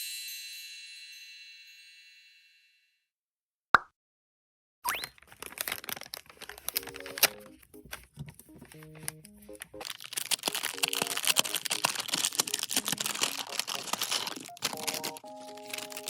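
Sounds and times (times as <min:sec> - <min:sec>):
packaging crinkling: 0:05.0 - 0:16.0
soft background music: 0:06.7 - 0:16.0.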